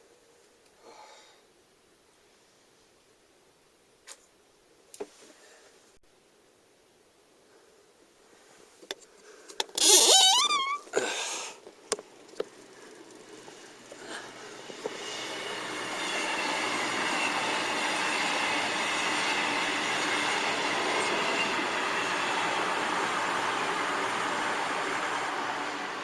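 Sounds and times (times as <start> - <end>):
steady rushing noise: 12.2 - 26.0.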